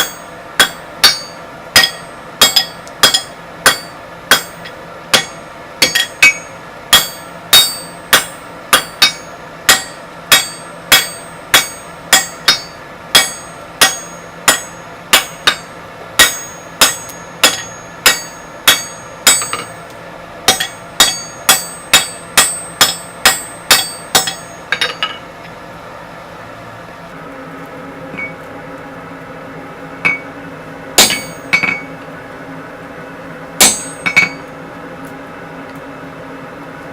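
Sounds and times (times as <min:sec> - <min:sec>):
hammer striking steel on anvil: 0:00.0 - 0:25.3, 0:28.1 - 0:28.5, 0:30.0 - 0:30.4, 0:31.0 - 0:31.9, 0:33.6 - 0:34.5.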